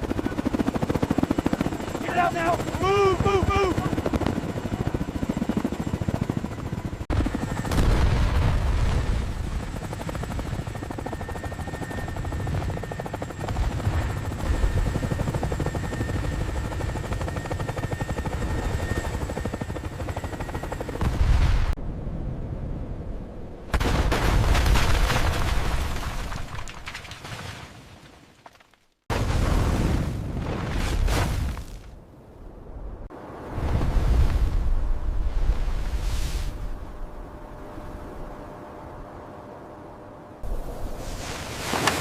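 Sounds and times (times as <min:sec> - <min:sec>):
helicopter rotor chop: 0:00.0 - 0:07.8, 0:08.9 - 0:21.1.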